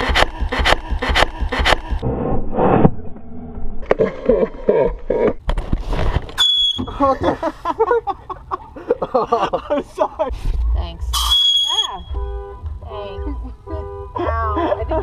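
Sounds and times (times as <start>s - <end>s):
people talking: 6.9s - 7.4s, 9.5s - 12.2s, 12.8s - 15.0s
high-pitched electronic beep: 11.1s - 12.2s.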